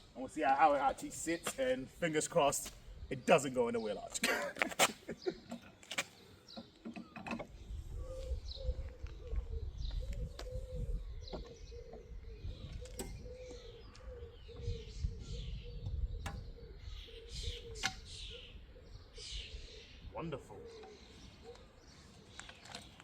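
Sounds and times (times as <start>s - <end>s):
birds chirping: 0.0s - 23.0s
low cooing: 8.0s - 19.0s.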